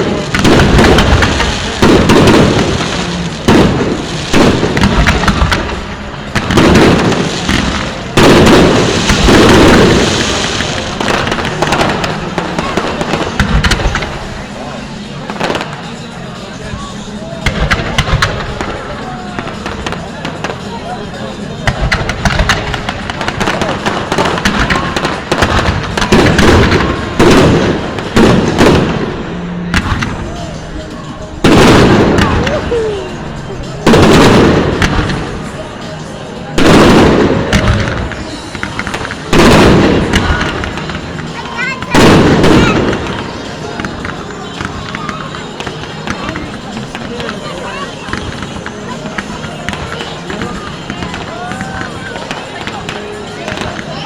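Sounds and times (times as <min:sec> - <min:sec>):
fireworks bangs with crackle: 0:00.0 - 0:54.0.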